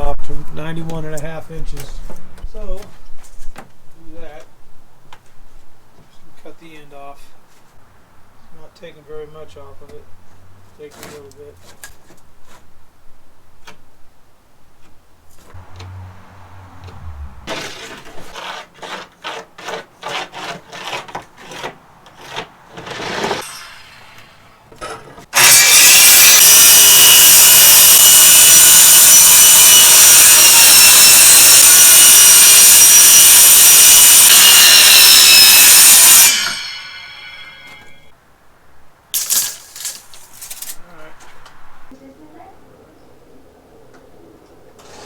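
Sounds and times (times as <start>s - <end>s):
power saw cutting plywood: 15.6s - 38.0s
knocking and scraping: 16.8s - 23.6s.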